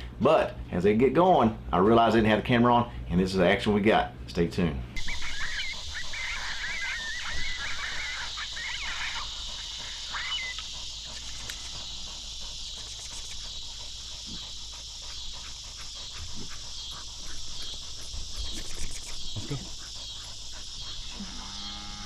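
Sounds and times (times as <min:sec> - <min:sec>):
canine yips and howling: 0:05.0 - 0:22.0.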